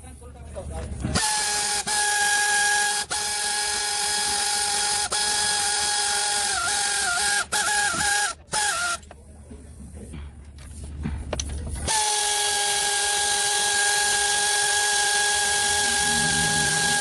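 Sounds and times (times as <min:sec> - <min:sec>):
air tool hissing and whining: 0:01.1 - 0:09.2, 0:11.8 - 0:17.0.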